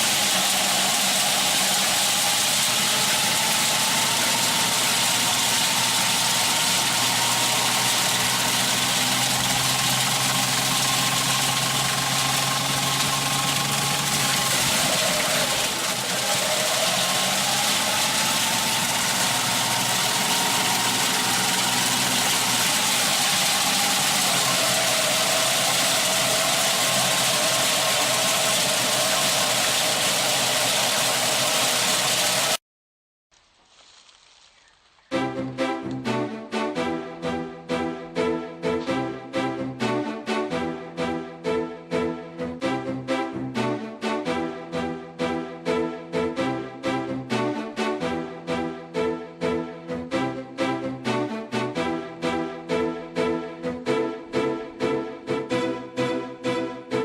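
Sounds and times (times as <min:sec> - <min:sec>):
engine running: 0:00.0 - 0:32.6, 0:35.1 - 0:57.0
whine changing pitch: 0:00.0 - 0:32.6.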